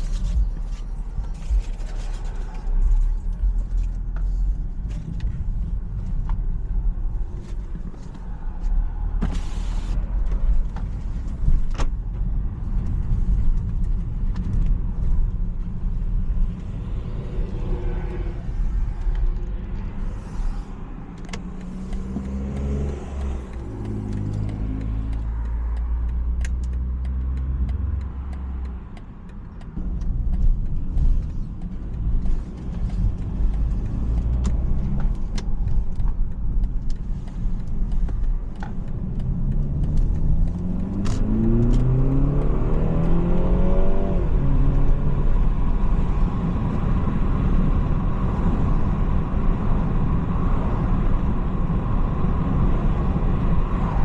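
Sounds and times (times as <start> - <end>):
car engine revving: 0.0 - 54.0
tyre and road noise: 0.0 - 54.0
sharp clicks: 21.0 - 43.2.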